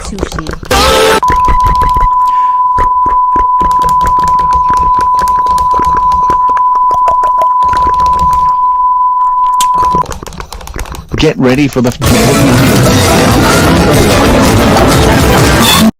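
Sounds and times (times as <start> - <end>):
faint rapid clicks and crackle: 0.0 - 2.3, 3.0 - 8.6, 9.6 - 12.0
long electronic beep: 1.0 - 10.0.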